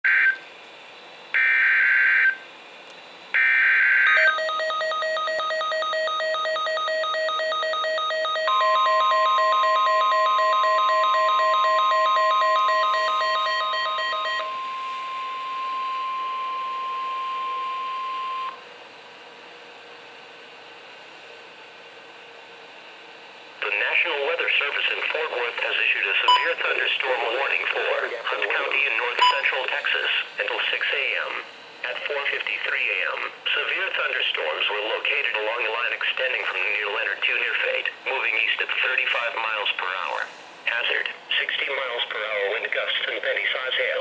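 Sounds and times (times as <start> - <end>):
steady warning alarm tone: 0.1 - 0.4, 1.3 - 2.4, 3.3 - 18.6, 26.2 - 26.9, 29.0 - 30.0
rapid beeping alarm: 3.4 - 18.6, 26.2 - 26.7, 29.2 - 29.7
faint radio hiss: 23.6 - 44.0.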